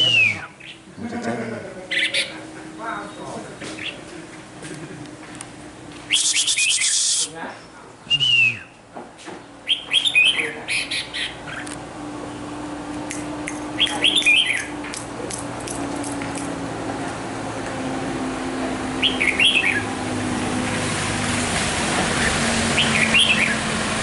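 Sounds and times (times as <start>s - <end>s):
bird chirping harshly: 0.0s - 0.8s, 1.9s - 2.4s, 6.1s - 7.3s, 9.6s - 11.6s, 13.8s - 14.8s, 19.0s - 19.9s, 22.2s - 23.6s.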